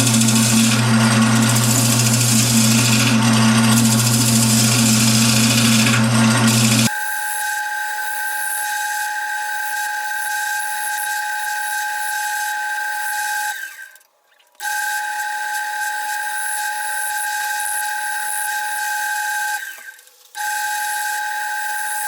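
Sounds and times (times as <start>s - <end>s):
rough noise of tool on wood: 0.0s - 6.9s
wood lathe whining: 0.0s - 6.9s.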